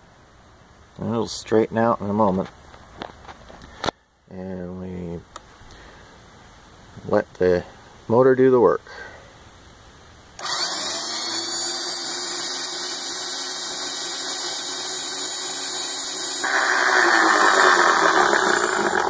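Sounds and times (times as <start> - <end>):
electric drill running: 10.4 - 19.0.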